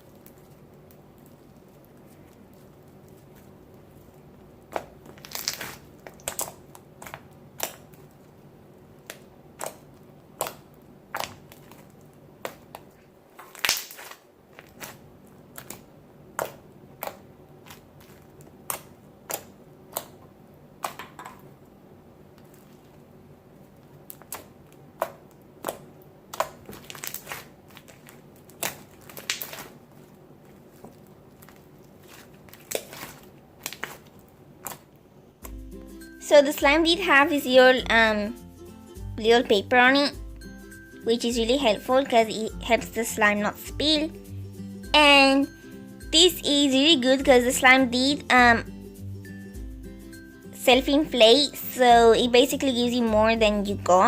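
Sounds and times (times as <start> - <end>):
slime popping and crackling: 0.0 - 21.2, 23.6 - 35.6.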